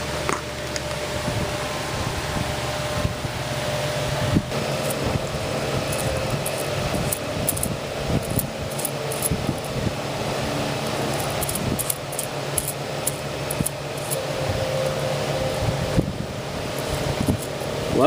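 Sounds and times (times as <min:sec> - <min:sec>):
steady mechanical hum: 0:00.0 - 0:18.0
light clicks and clinks: 0:05.9 - 0:09.8, 0:11.1 - 0:14.2.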